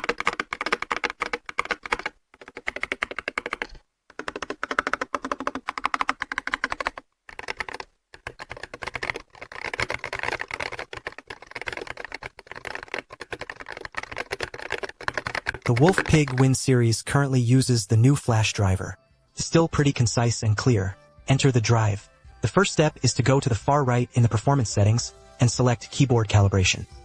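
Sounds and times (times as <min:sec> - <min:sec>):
mechanical keyboard typing: 0:00.0 - 0:16.8.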